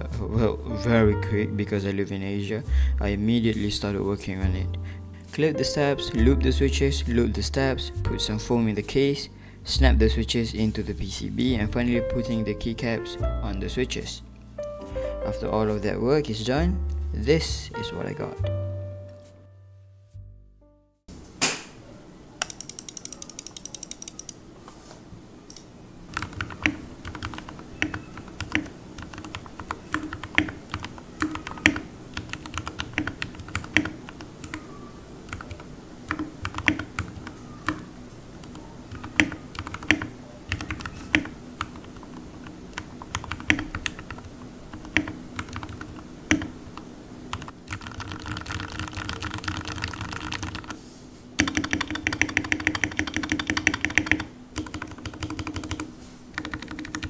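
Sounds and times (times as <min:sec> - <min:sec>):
typing on mechanical keyboard: 0:22.4 - 0:24.4, 0:26.1 - 0:46.5, 0:47.3 - 0:50.8, 0:51.4 - 0:57.0.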